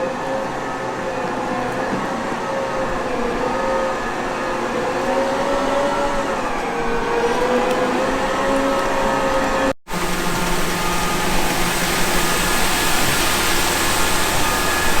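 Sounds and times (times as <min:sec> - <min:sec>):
farm machinery whining: 0:07.7 - 0:15.0.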